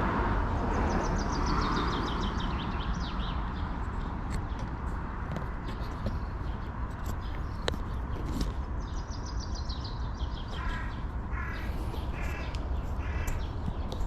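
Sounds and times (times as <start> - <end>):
wind and riding noise rumble: 0.0 - 14.0
crow cawing: 10.5 - 13.5.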